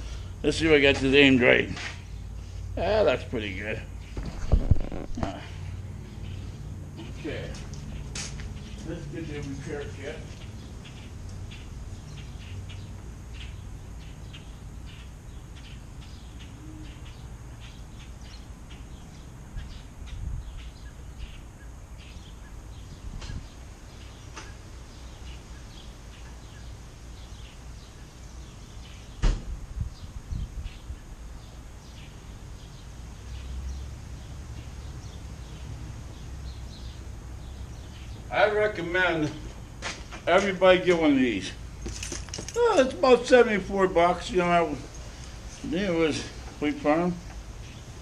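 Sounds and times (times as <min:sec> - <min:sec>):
small birds chirping: 0:00.0 - 0:48.0
low bumps of handling: 0:04.1 - 0:05.3
sharp knock: 0:29.2 - 0:29.5.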